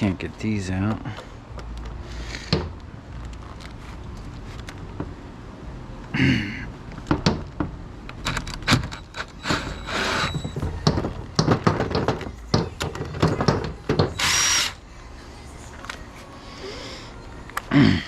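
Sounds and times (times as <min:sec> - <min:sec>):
metal knocks and clanks: 0:07.1 - 0:14.2
power drill: 0:09.4 - 0:10.4, 0:14.0 - 0:14.8.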